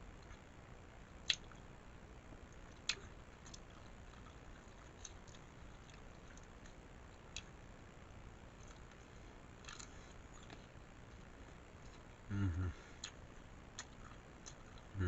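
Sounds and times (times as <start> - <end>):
person chewing food: 1.2 - 1.7, 2.5 - 7.5, 8.6 - 15.0.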